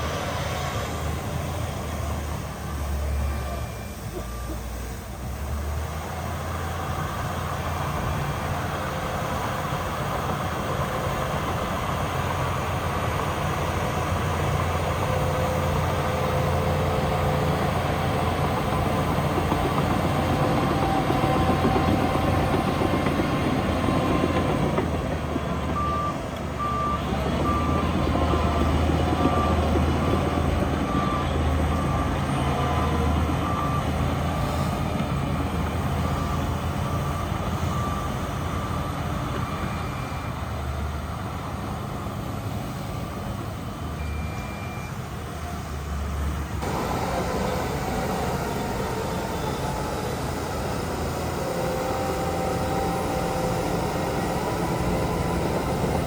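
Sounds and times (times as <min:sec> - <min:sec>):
heavy diesel engines under load: 0:00.0 - 0:56.0
reversing alarm beeps: 0:02.0 - 0:05.8, 0:25.7 - 0:34.8, 0:35.4 - 0:40.9, 0:44.0 - 0:45.1, 0:46.6 - 0:56.0.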